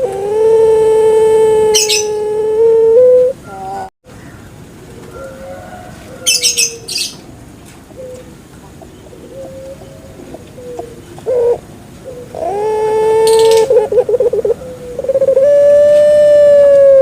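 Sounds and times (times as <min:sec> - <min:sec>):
dove cooing: 0:00.0 - 0:03.9, 0:07.9 - 0:17.0.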